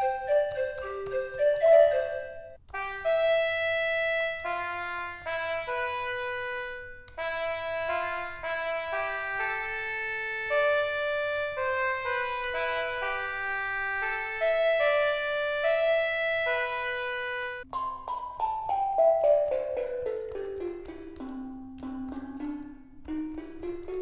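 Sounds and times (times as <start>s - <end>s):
held wind-like instrument melody: 0.0s - 17.8s.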